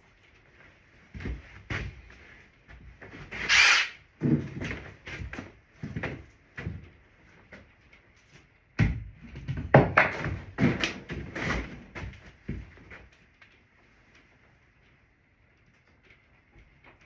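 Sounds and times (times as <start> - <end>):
wooden boards and tools knocking: 4.2 - 4.9, 8.8 - 12.2.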